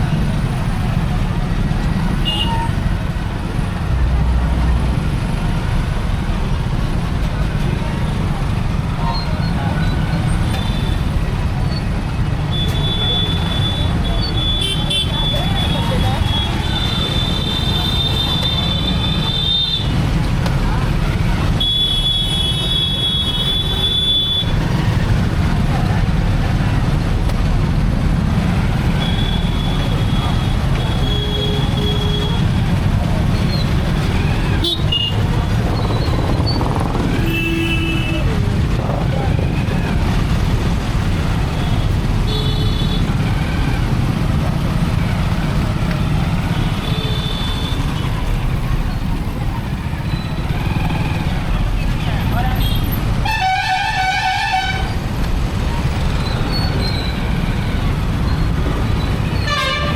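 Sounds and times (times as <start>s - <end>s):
motorcycle road noise: 0.0s - 59.9s
motorcycle engine rumble: 24.5s - 53.9s
wind buffeting microphone: 35.1s - 39.7s.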